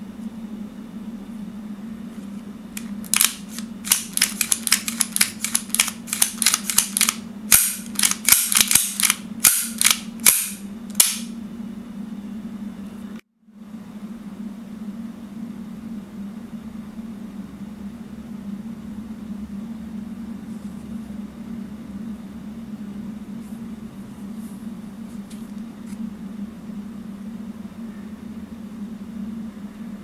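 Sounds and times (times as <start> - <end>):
steady low hum: 0.0 - 30.0
airsoft pistol shots: 6.4 - 11.3.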